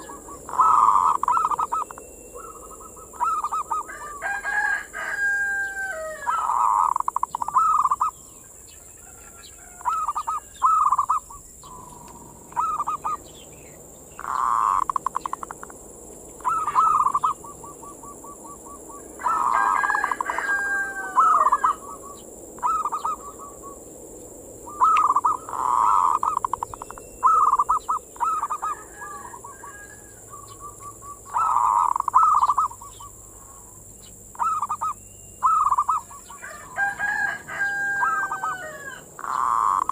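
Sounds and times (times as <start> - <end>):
dove cooing: 0.0 - 8.2, 9.1 - 15.8, 16.4 - 23.9, 24.6 - 39.9.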